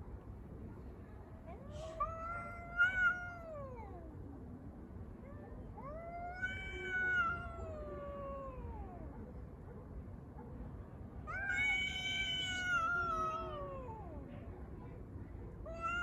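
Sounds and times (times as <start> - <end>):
cats yowling: 1.9 - 4.1, 5.8 - 9.1, 11.3 - 14.2, 15.6 - 16.0.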